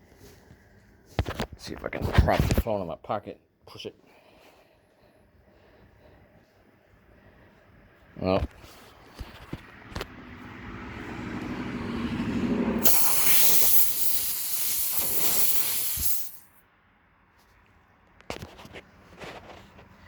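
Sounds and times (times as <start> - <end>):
air hissing from a tyre: 12.8 - 16.6.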